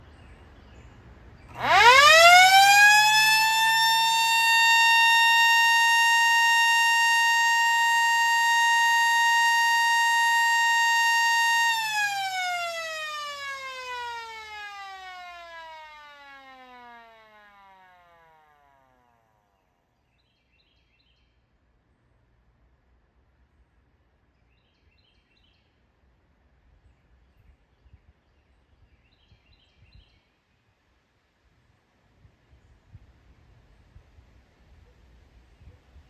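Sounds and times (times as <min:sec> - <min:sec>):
air raid siren: 0:01.5 - 0:19.1.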